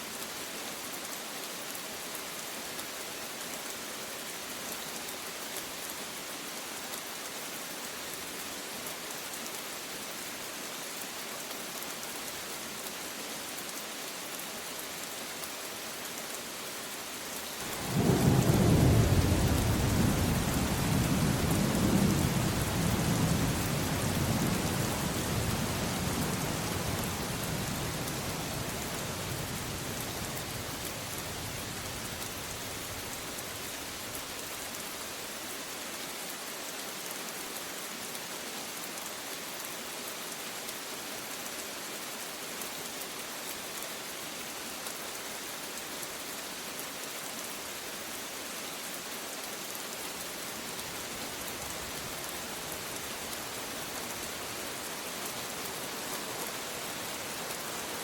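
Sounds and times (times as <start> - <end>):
steady rain: 0.0 - 58.0
thunder rumbling: 17.7 - 30.8.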